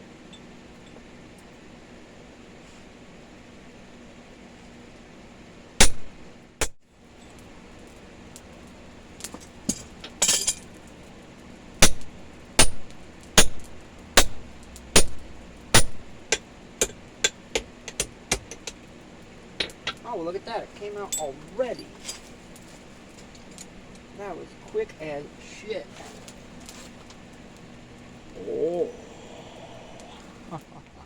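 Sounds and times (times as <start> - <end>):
hammer striking punch on hot steel: 5.8 - 6.8, 11.8 - 18.8, 19.6 - 20.0.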